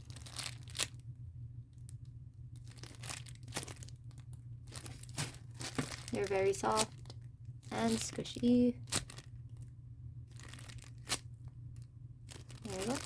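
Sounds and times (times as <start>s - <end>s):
foam toys crinkling: 0.0s - 1.1s, 1.8s - 13.0s
steady low hum: 0.0s - 13.0s.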